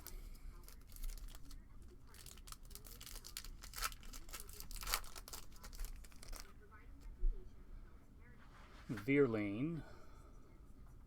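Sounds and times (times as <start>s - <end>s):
card pack wrapper tearing and crinkling: 0.6s - 6.5s.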